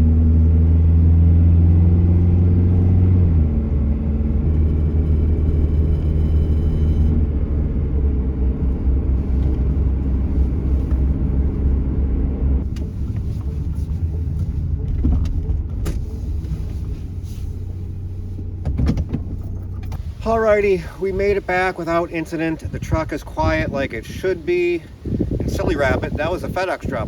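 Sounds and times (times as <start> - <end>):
pickup engine low drone: 0.0 - 27.0
road noise: 0.0 - 27.0
sharp clicks and knocks: 12.6 - 16.6.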